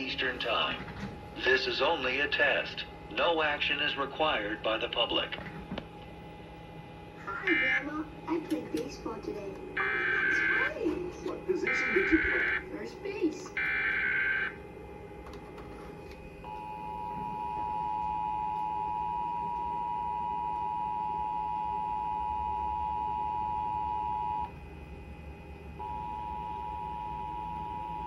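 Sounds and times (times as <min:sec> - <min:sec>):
two-tone alert signal: 0:09.8 - 0:10.7, 0:11.6 - 0:12.7.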